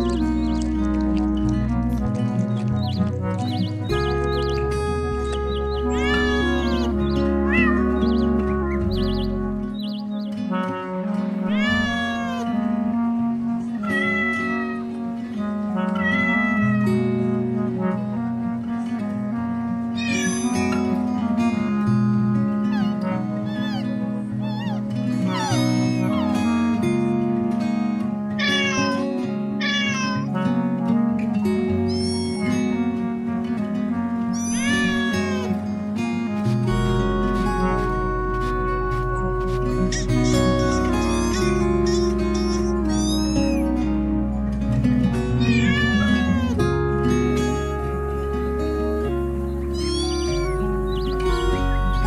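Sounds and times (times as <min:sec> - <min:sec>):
background music: 0:00.0 - 0:52.0
cat meowing: 0:05.8 - 0:07.8, 0:11.5 - 0:12.5, 0:13.8 - 0:14.8, 0:15.9 - 0:16.9, 0:20.0 - 0:20.8, 0:22.7 - 0:26.6, 0:28.4 - 0:30.4, 0:31.9 - 0:32.5, 0:34.4 - 0:35.6, 0:39.9 - 0:43.7, 0:45.4 - 0:46.6, 0:49.7 - 0:50.6.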